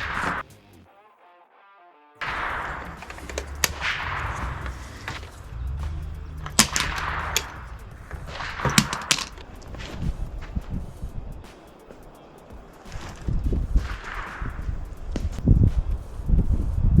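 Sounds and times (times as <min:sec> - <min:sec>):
sharp bangs: 0:00.0 - 0:00.4, 0:02.2 - 0:11.8, 0:12.8 - 0:15.5
rushing background noise: 0:02.2 - 0:17.0.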